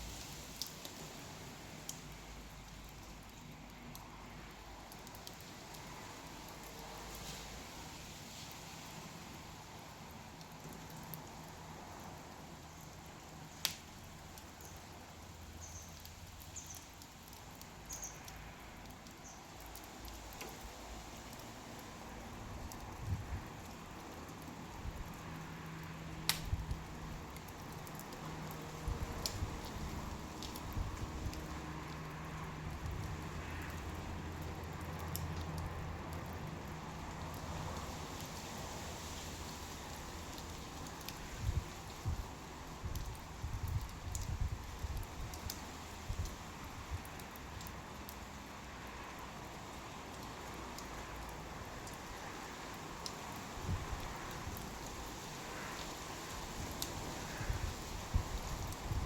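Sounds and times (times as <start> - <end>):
wood fire crackling: 0.0 - 59.0
sharp pops and snaps: 12.6 - 14.8, 22.6 - 32.1, 32.7 - 36.4, 42.8 - 48.3.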